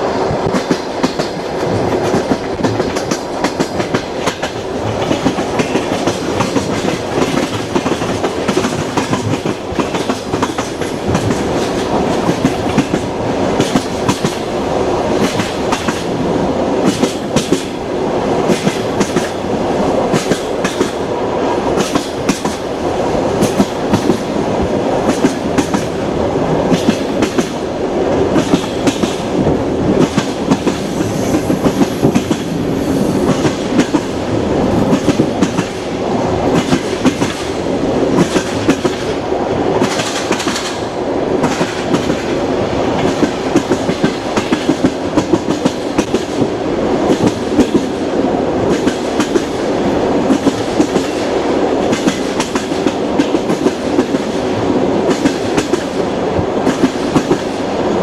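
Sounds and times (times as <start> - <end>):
train cars rumbling: 0.0 - 58.0
rush of high hiss: 30.3 - 35.1.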